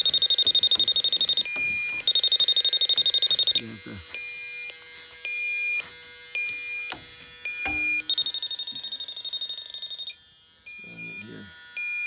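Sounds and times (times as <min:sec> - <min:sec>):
leak detector beeping: 0:00.0 - 0:12.0.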